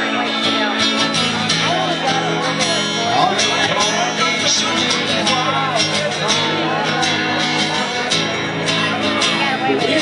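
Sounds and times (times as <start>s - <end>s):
live country band with guitar: 0.0s - 10.0s.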